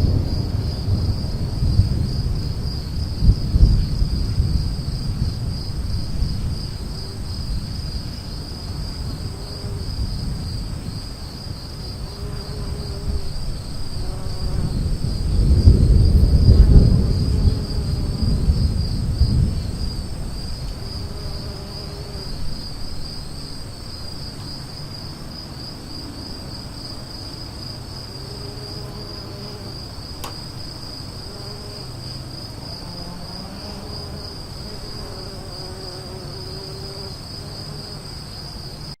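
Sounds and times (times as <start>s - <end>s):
low storm rumble: 0.0s - 37.4s
crickets trilling: 0.0s - 39.0s
sharp click: 30.2s - 30.4s.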